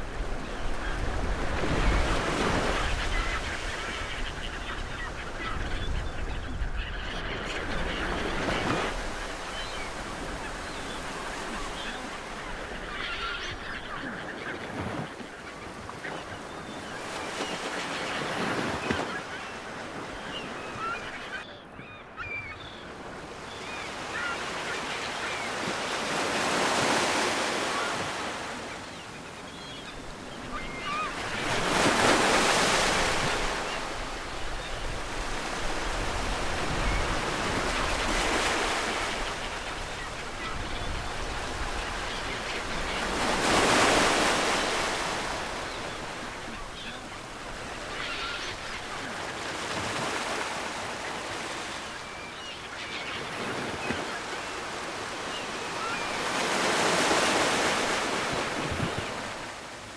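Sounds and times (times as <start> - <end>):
ocean waves breaking: 22.8 - 59.8.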